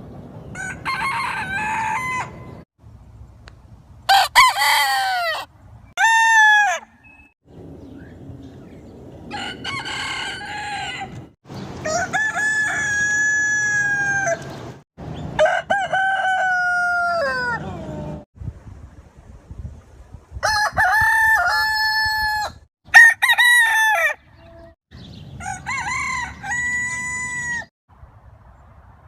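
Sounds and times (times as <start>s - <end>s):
roosters crowing: 0.5s - 2.6s, 4.1s - 7.2s, 9.3s - 18.2s, 20.4s - 27.7s.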